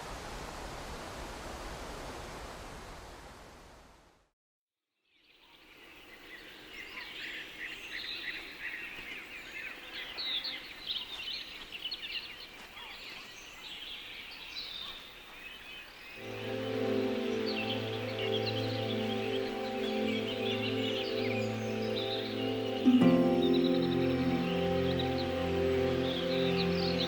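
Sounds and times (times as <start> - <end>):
songbirds chirping: 5.1 - 27.0
sustained musical tones: 16.2 - 27.0.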